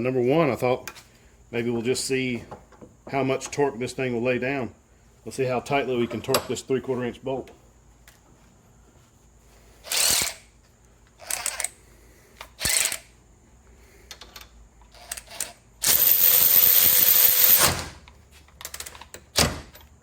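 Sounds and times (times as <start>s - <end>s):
cordless ratchet motor: 9.9s - 10.4s, 11.2s - 11.7s, 12.6s - 13.1s, 14.9s - 17.6s.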